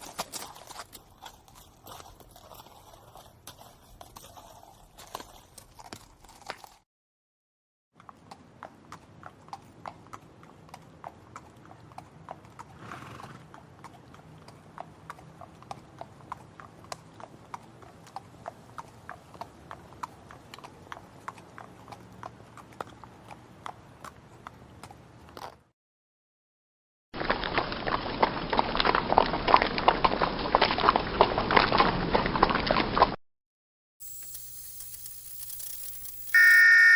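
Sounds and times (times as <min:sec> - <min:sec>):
horse hooves galloping: 0:00.0 - 0:06.7, 0:08.0 - 0:25.6
horse breathy snort: 0:12.7 - 0:13.4.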